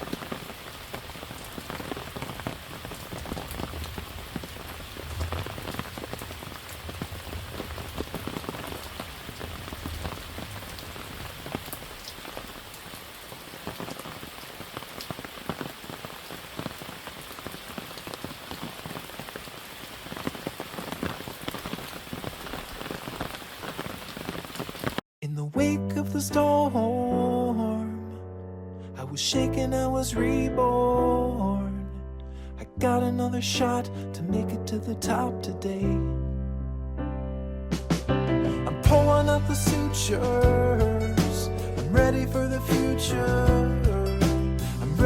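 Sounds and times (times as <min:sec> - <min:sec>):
raindrops tapping on umbrella: 0:00.0 - 0:25.0
steady rain: 0:00.0 - 0:25.0, 0:38.6 - 0:45.0.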